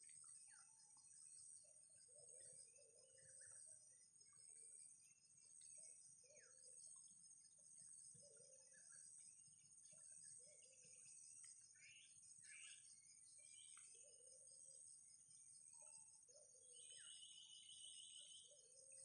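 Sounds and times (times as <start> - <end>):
bird chirps: 8.1 - 14.4, 15.8 - 19.0.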